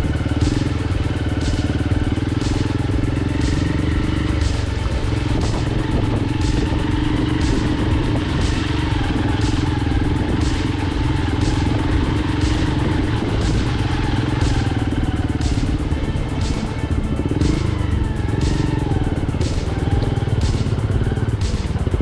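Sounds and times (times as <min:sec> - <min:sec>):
electronic music with steady beat: 0:00.0 - 0:22.0
motorcycle engine running: 0:00.0 - 0:22.0.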